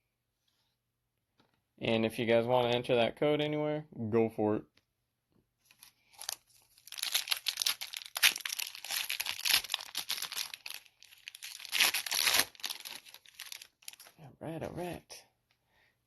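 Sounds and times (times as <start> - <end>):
foil wrapper tearing and crinkling: 5.7 - 14.1.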